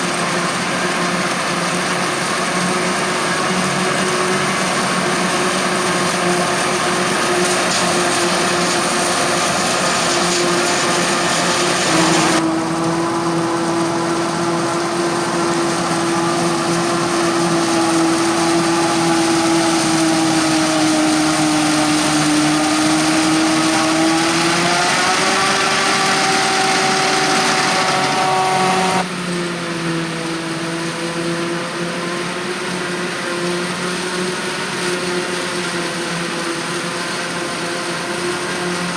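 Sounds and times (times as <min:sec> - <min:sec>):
diesel farm machinery running: 0:00.0 - 0:38.9
machine hum and whine: 0:02.4 - 0:32.7.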